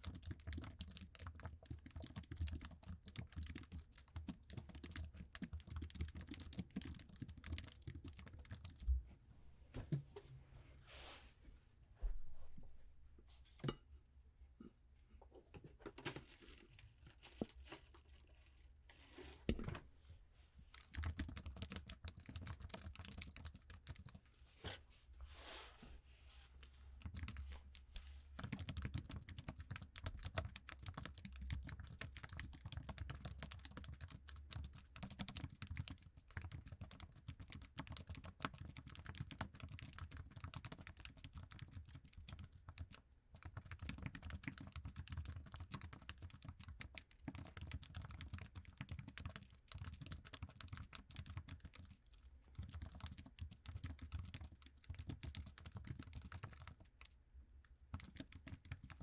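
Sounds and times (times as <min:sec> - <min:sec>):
typing on keyboard: 0:00.0 - 0:08.8, 0:20.8 - 0:24.4, 0:26.6 - 0:59.0.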